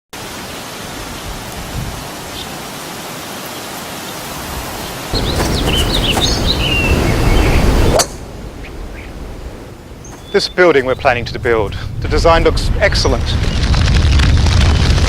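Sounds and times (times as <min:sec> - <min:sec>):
steady rushing noise: 0:04.5 - 0:08.6.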